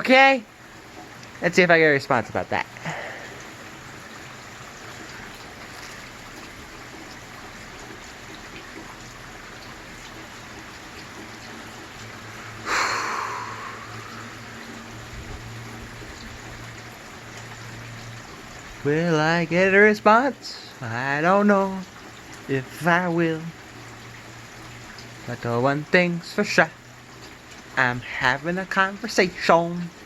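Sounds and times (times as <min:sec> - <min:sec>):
steady rain falling: 0:00.0 - 0:30.0.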